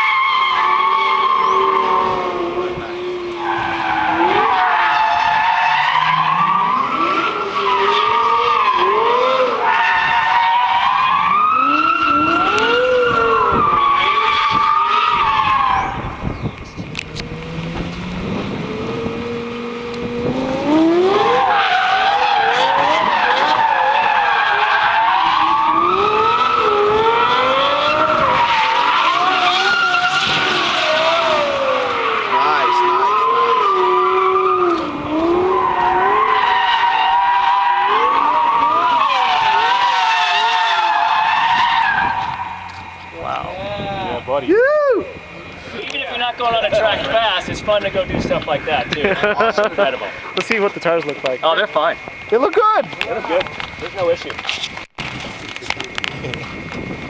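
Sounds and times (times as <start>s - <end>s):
tyres skidding: 0.0s - 57.0s
sports car engine revving: 0.4s - 10.2s, 11.1s - 44.3s.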